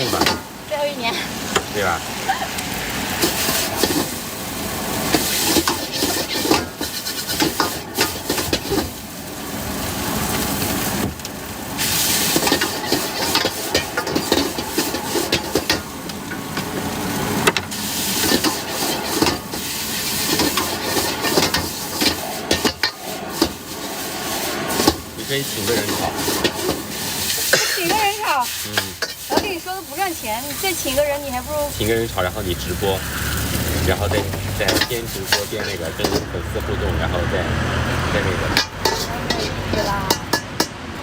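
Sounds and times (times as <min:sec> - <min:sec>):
food sizzling in a wok: 0:00.0 - 0:41.0
metal spatula clanking on wok: 0:05.1 - 0:09.0, 0:25.7 - 0:29.6, 0:34.6 - 0:36.4, 0:38.4 - 0:40.8.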